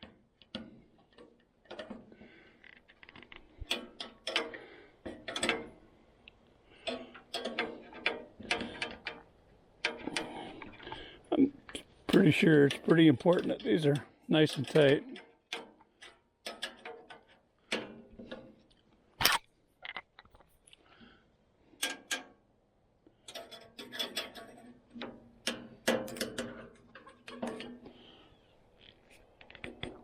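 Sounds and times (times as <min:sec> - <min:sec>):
wrenches clicking and scraping metal: 0:00.0 - 0:05.8, 0:06.7 - 0:11.0, 0:11.7 - 0:19.4, 0:23.2 - 0:28.0.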